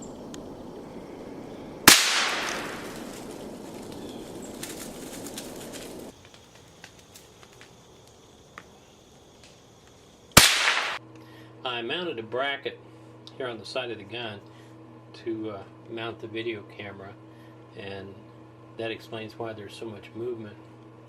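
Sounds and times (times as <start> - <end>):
outdoor background noise: 0.0 - 21.0
rifle shot with echo: 1.8 - 3.4, 10.4 - 11.0.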